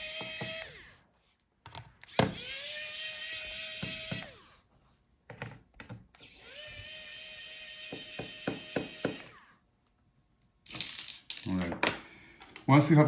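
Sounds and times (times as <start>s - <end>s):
electric screwdriver motor whining: 0.0s - 1.0s, 2.0s - 4.6s, 6.2s - 9.5s.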